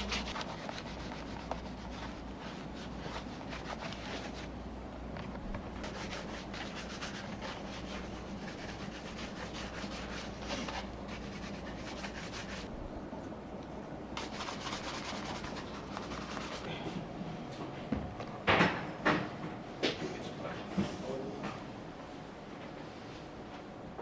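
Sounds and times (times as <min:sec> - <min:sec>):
rubbing strokes on a shoe: 0:05.8 - 0:12.7.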